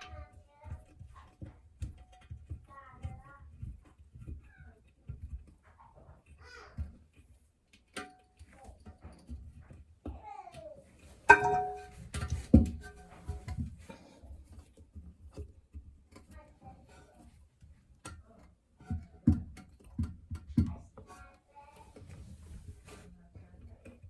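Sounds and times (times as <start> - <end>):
hard parts clinking: 11.2 - 14.0.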